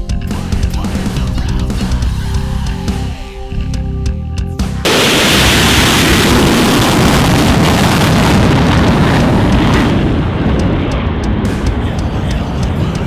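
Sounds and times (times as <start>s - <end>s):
music: 0.0s - 13.0s
loud jet engine roar: 4.8s - 13.0s.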